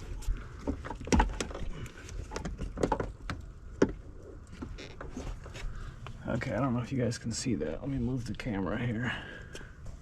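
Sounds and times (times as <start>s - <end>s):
clicks and knocks of plastic fittings: 0.1s - 6.2s.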